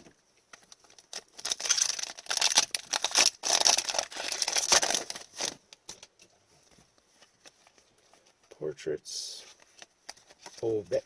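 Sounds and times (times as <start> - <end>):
wrapper tearing and crinkling: 0.8 - 5.6.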